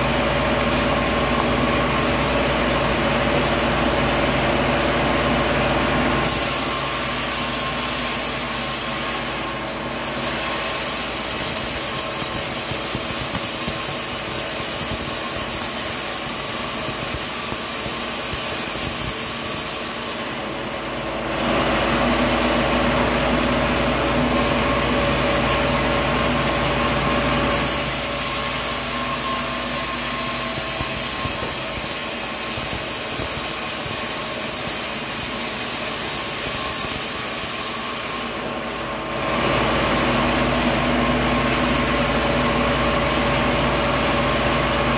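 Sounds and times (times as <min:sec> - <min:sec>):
sawmill machinery running: 0:00.0 - 0:44.9
saw cutting wood: 0:06.2 - 0:21.0, 0:25.7 - 0:38.4.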